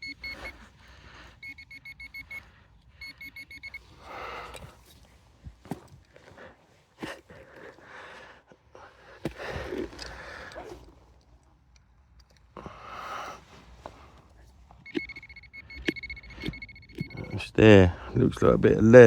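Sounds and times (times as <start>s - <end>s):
electronic beeping: 0.0s - 0.6s, 1.4s - 3.8s, 14.8s - 17.6s
person breathing: 0.2s - 1.6s, 2.2s - 5.2s, 6.2s - 10.8s, 12.6s - 14.4s
hand scraping soil: 9.0s - 11.3s.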